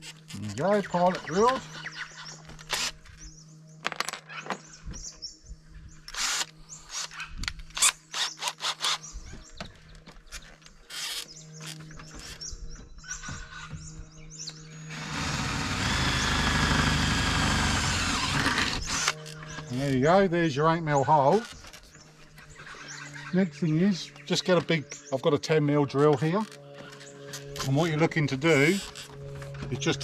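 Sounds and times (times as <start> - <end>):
power drill drilling: 2.5 - 3.1, 6.1 - 9.0, 14.9 - 19.6.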